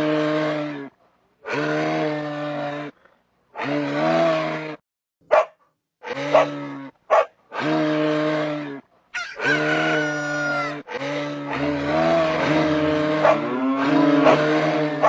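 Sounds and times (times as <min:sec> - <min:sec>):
livestock low calls: 0:09.2 - 0:10.8
livestock sharp cries: 0:09.2 - 0:10.8.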